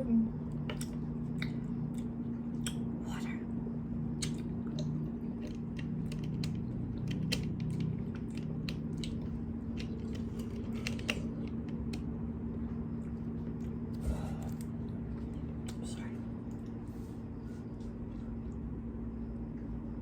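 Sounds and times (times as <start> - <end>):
steady low hum: 0.0 - 20.0
crunchy chewing: 4.0 - 18.6.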